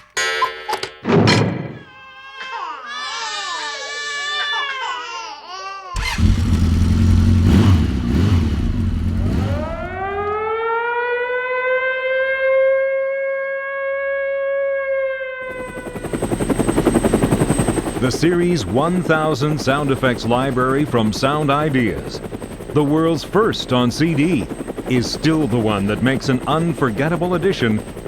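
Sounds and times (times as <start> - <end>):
siren winding up: 9.2 - 11.0.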